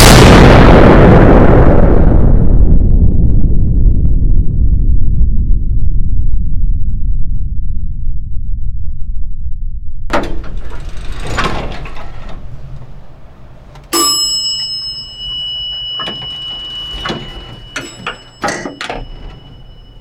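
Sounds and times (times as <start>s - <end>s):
steady low rumble: 0.0s - 13.9s
metallic scrapes and rattles: 10.1s - 13.4s, 15.9s - 20.0s
elevator bell ding: 13.8s - 20.0s.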